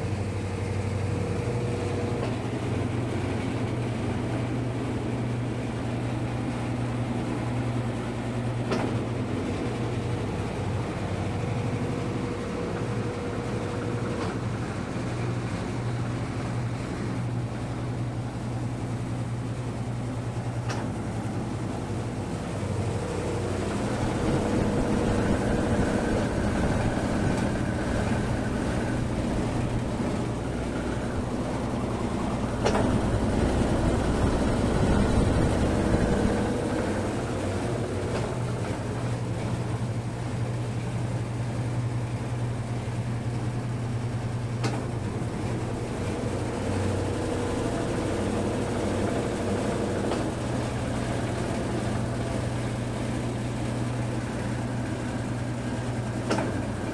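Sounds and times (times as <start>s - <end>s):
washing machine motor hum: 0.0s - 56.9s
faint whining tones: 9.5s - 16.1s, 18.8s - 42.8s
washing machine click: 20.2s - 40.4s.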